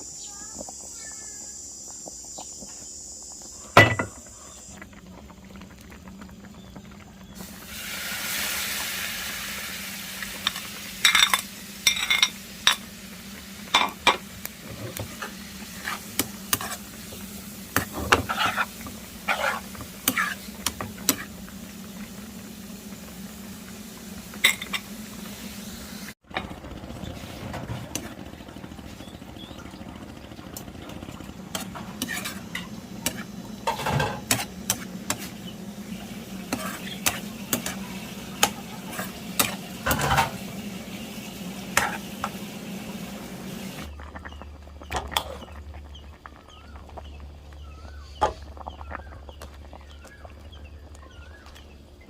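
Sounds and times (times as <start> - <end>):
food sizzling in hot oil: 0.0 - 5.3, 6.0 - 26.2, 31.6 - 46.7
steady low hum: 10.0 - 52.0
utensil scraping pan: 14.6 - 21.3, 31.5 - 35.5, 36.4 - 37.8.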